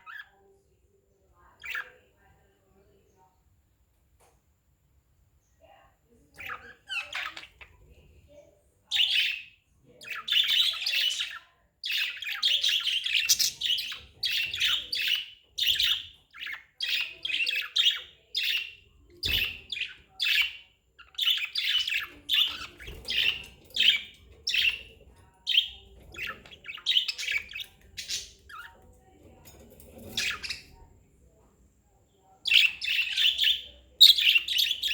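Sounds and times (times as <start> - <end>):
budgerigars chirping: 6.4 - 7.6, 9.0 - 28.8, 30.0 - 30.8, 32.5 - 34.9.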